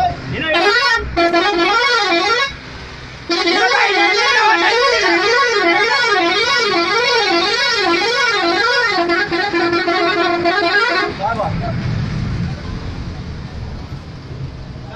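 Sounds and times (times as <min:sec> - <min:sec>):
bus air horn warbling: 0:00.0 - 0:11.4.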